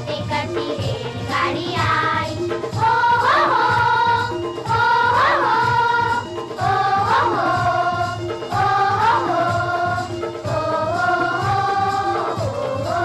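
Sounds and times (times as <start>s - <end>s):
person singing children's rhyme: 0.0s - 4.2s.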